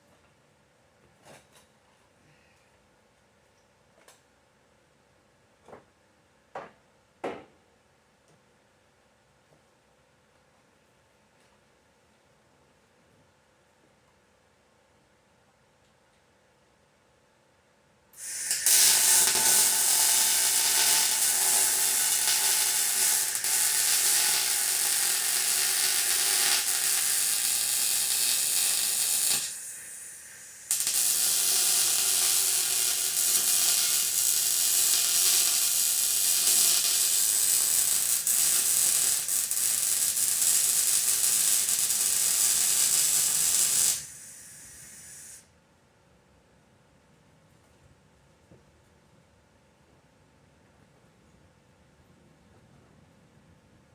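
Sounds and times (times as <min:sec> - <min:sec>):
welding arc crackling and hissing: 0:18.2 - 0:45.4.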